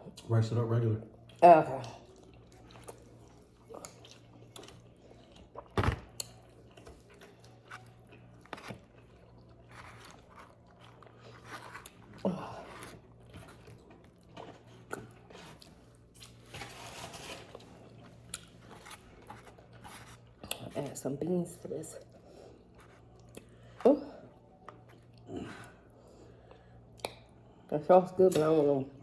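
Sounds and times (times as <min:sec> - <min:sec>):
chewing and biting: 0:01.2 - 0:16.5.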